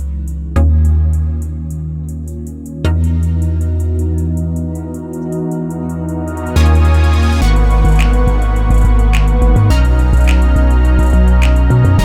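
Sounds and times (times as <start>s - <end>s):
soft ambient music: 0.0s - 12.0s.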